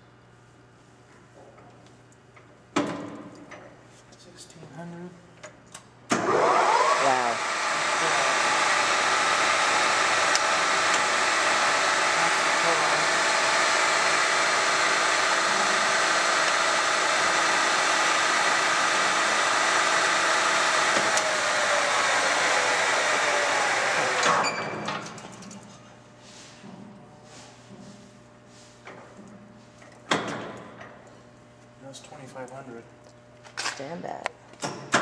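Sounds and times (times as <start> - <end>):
lathe motor and gear whine: 6.2 - 25.1.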